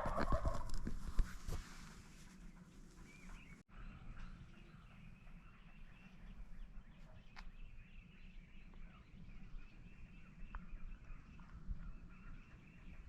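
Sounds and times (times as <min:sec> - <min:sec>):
distant birds chirping: 0:01.4 - 0:13.0.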